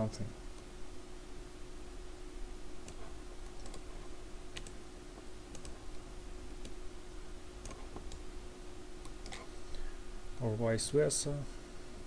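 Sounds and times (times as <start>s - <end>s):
low electrical hum: 0.0s - 12.0s
computer clicks: 2.8s - 3.9s, 4.5s - 4.8s, 5.5s - 5.8s.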